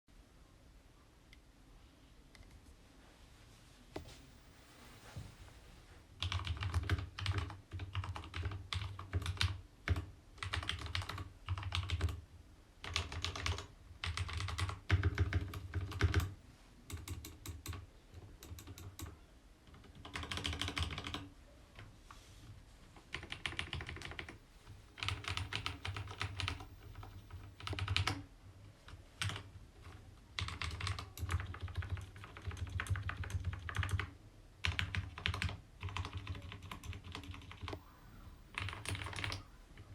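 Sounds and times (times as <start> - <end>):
mechanical keyboard typing: 6.2 - 12.2, 12.8 - 16.3, 16.9 - 19.1, 19.7 - 21.3, 23.0 - 24.4, 25.0 - 28.3, 28.9 - 37.8, 38.5 - 39.9.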